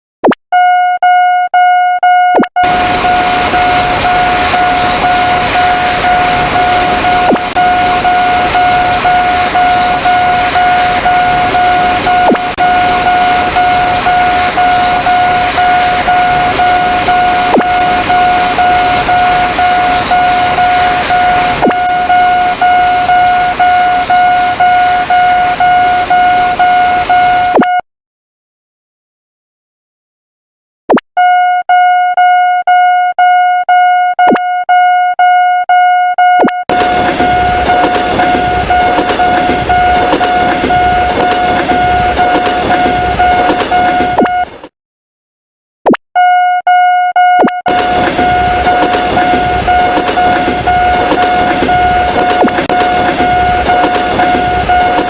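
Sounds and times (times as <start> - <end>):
railroad crossing bell ringing: 1.2 - 27.6, 36.7 - 44.4, 46.2 - 55.0
passing train rushing: 2.6 - 27.4, 36.7 - 44.6, 47.7 - 55.0.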